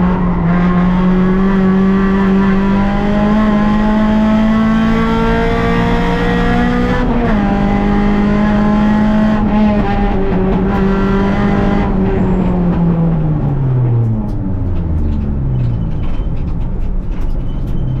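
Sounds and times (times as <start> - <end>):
car engine revving: 0.0 - 18.0
clicks and rattles: 13.4 - 18.0.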